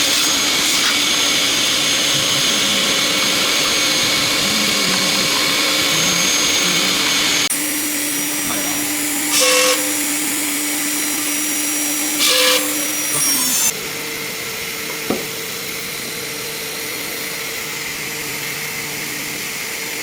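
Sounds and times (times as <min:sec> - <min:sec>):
cnc router machine whine: 0:00.0 - 0:20.0.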